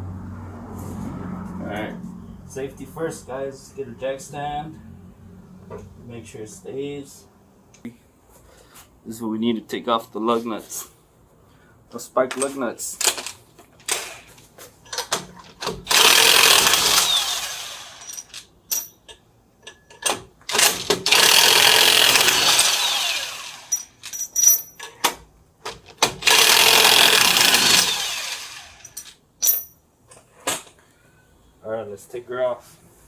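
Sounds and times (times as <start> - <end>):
power wrench spinning: 15.7 - 18.5, 20.5 - 24.4, 26.2 - 29.1.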